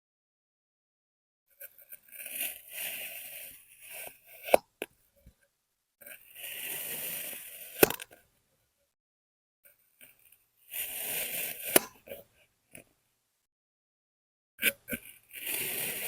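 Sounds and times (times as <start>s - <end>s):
blade cutting sand: 1.6s - 4.9s, 6.0s - 8.2s, 10.0s - 12.9s, 14.6s - 16.0s
sharp click: 7.8s - 8.2s, 11.7s - 12.2s.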